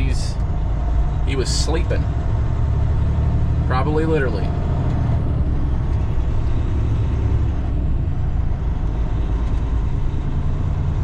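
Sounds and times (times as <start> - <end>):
diesel truck engine droning: 0.0 - 11.0.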